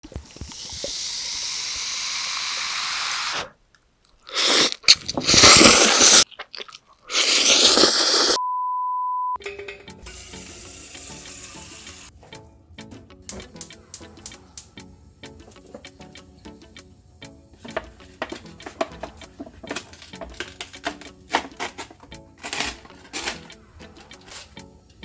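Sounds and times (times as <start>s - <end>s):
steady hiss: 0.0s - 3.6s, 10.0s - 12.2s, 13.1s - 25.0s
loud rushing hiss: 0.2s - 3.5s, 4.4s - 6.2s, 10.1s - 12.1s
electronic beep: 8.4s - 9.4s
soft background music: 9.4s - 25.0s.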